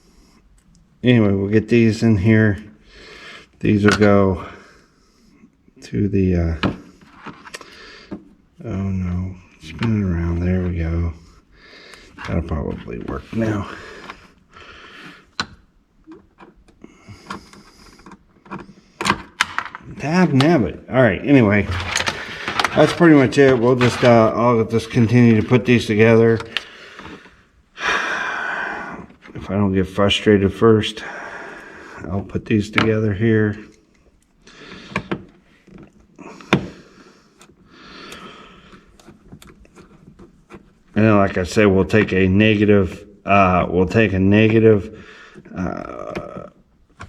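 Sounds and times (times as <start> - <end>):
hands rustling and scraping hardware: 6.4 - 27.6, 32.0 - 47.0
wiring parts clicking: 11.9 - 27.4.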